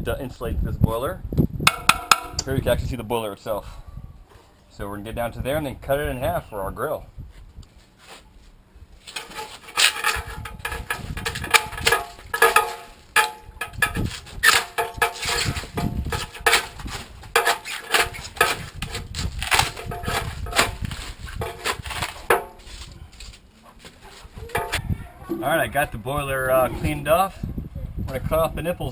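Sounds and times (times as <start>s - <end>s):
knocking and scraping on steel tank: 1.7s - 2.4s, 9.1s - 22.8s, 24.4s - 25.6s.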